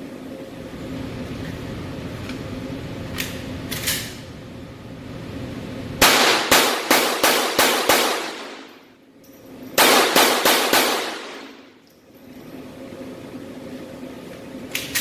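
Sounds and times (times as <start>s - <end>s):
pistol shots: 6.0s - 8.8s, 9.8s - 11.7s.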